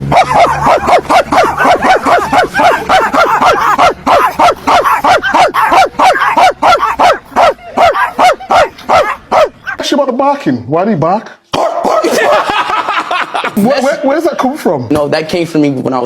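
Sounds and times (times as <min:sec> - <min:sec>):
man barking like a dog: 0:00.0 - 0:09.9, 0:11.5 - 0:12.6.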